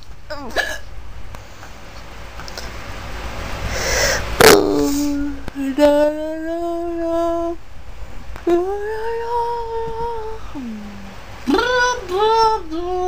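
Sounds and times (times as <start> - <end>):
woman humming notes: 4.4 - 7.6, 8.5 - 13.0.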